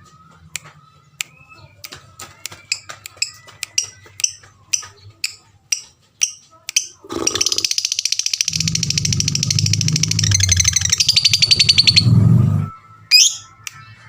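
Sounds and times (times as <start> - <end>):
lovebird chirping and trilling: 6.2 - 12.4, 13.1 - 13.6.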